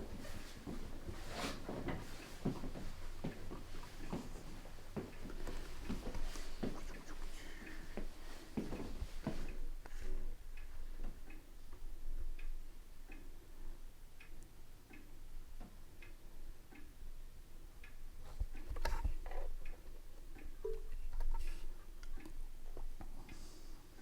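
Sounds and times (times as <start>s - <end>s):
faint light ticks: 1.9s - 17.0s.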